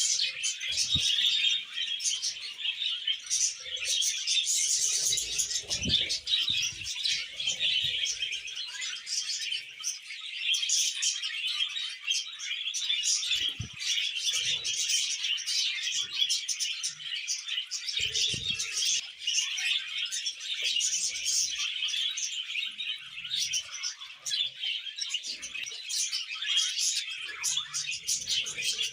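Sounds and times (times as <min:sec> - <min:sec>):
budgerigars chattering: 0:00.0 - 0:09.7.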